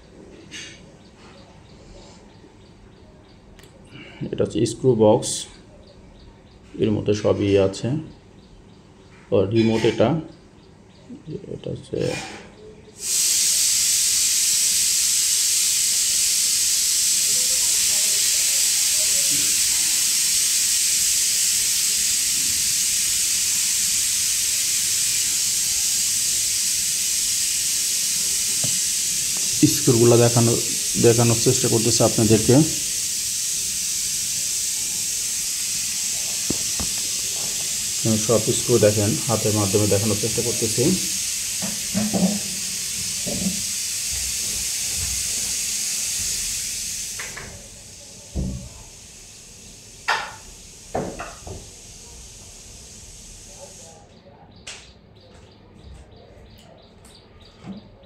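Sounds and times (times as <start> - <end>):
high-pitched hiss: 12.0 - 54.2.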